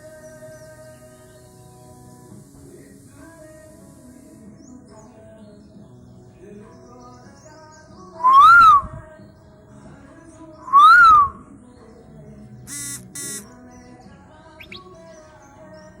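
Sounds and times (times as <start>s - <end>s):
bird calling rising and falling: 8.2s - 9.0s, 10.7s - 11.4s, 12.7s - 13.4s, 14.6s - 14.9s
short buzzy bird notes: 12.7s - 13.5s.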